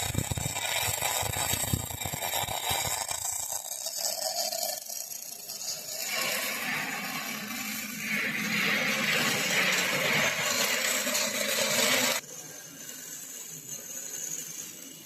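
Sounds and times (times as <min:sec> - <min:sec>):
welding arc crackling: 0:00.0 - 0:08.2.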